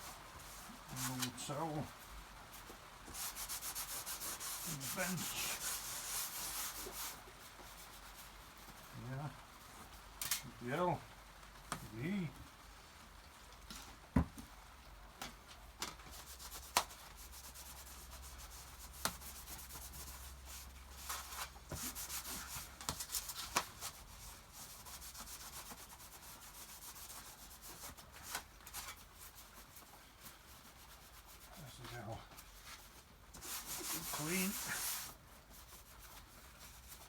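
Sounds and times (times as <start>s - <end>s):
towel scrubbing toolbox: 0.6s - 1.9s, 3.1s - 7.2s, 16.1s - 37.0s.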